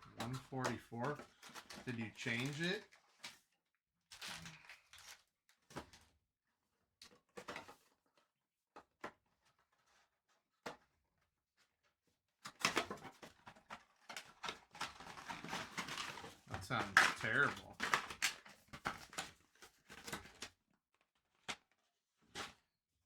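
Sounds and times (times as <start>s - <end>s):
card packaging rustling and tearing: 0.3s - 3.2s, 12.6s - 20.5s.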